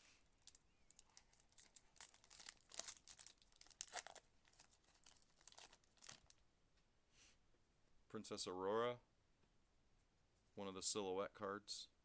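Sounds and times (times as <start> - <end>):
wrapper tearing and crinkling: 0.3 - 6.4.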